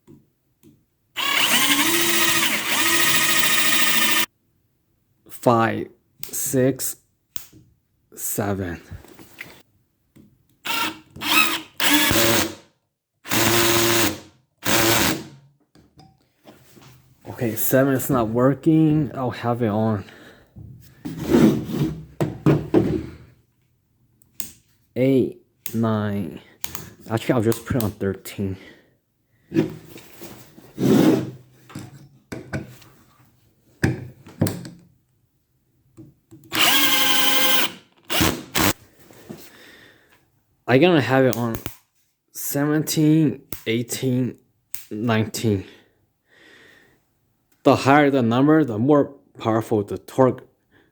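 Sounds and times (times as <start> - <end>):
cordless drill bursts: 1.2 - 4.3, 10.7 - 12.6, 13.3 - 15.3, 36.5 - 38.8
drill clutch slipping: 1.2 - 4.3, 10.7 - 12.6, 13.3 - 15.3, 36.5 - 38.8.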